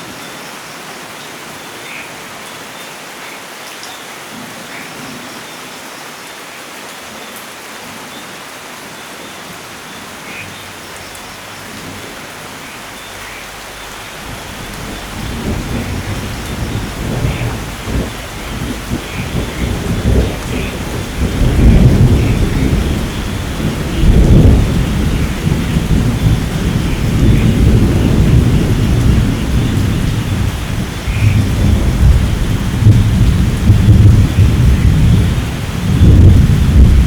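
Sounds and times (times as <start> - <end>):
steady rain: 0.0 - 37.0
rolling thunder: 13.8 - 37.0.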